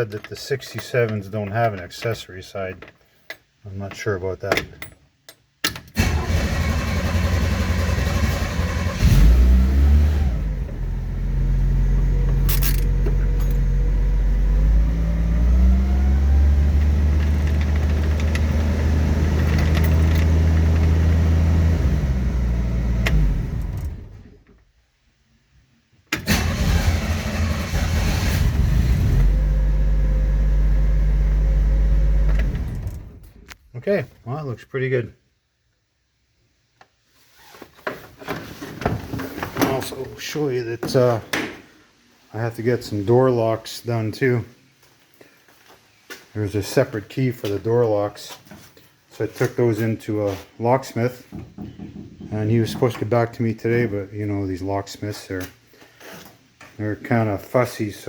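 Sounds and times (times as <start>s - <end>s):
van engine revving: 6.0s - 24.3s, 26.2s - 33.2s.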